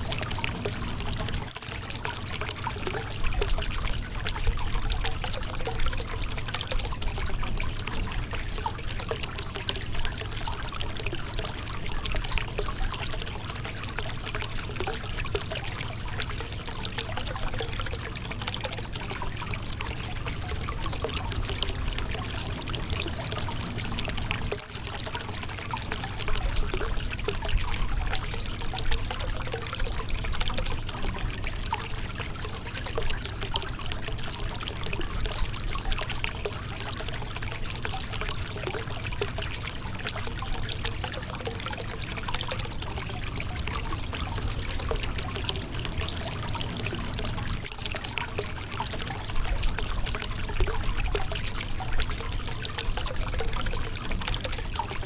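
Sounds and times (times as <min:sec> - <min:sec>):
river water running over rocks: 0:00.0 - 0:01.6, 0:16.8 - 0:29.8, 0:38.1 - 0:55.0.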